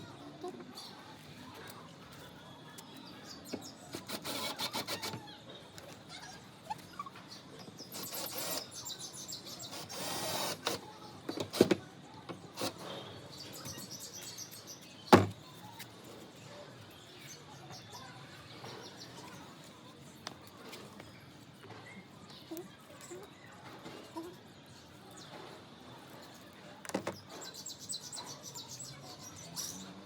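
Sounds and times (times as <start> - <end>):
birds chirping: 2.0 - 15.8.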